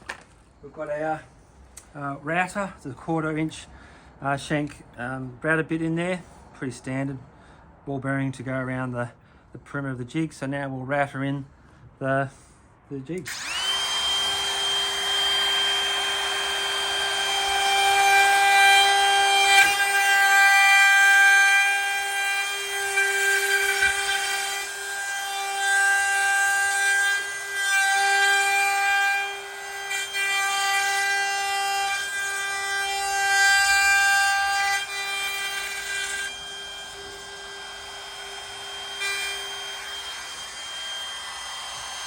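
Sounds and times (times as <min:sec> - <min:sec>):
electric router cutting wood: 0:13.3 - 0:42.0.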